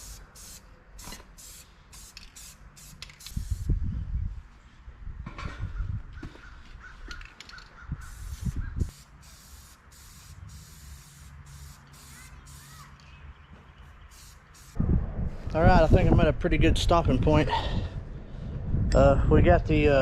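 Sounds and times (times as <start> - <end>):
aerosol spray can bursts: 0.0 - 3.7, 8.0 - 13.0, 14.1 - 14.8.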